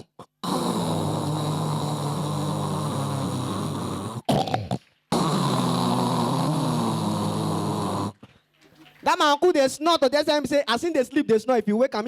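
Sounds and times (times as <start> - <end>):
person snoring: 0.0 - 8.2
sharp snort: 0.0 - 8.4.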